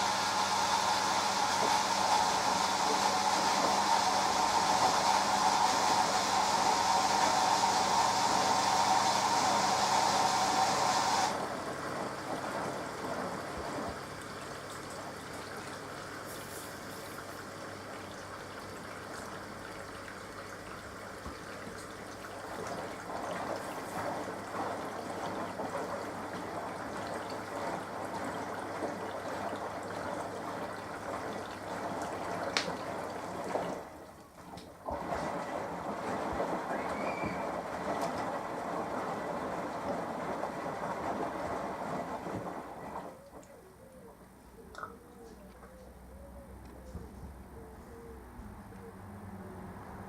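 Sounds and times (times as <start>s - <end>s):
washing machine hissing hum: 0.0s - 44.4s
water gurgling and trickling: 11.7s - 43.8s.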